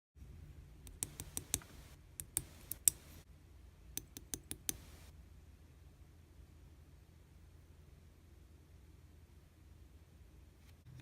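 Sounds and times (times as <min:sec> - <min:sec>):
sharp light clicks: 0:00.9 - 0:03.0
faint hiss: 0:04.6 - 0:09.3.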